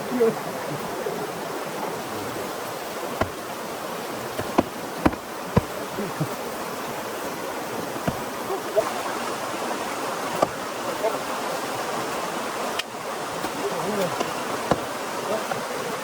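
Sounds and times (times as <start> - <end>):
rain hissing: 0.0 - 16.0
short sharp knocks: 3.2 - 3.5, 4.4 - 5.9, 8.0 - 8.4, 14.7 - 14.9.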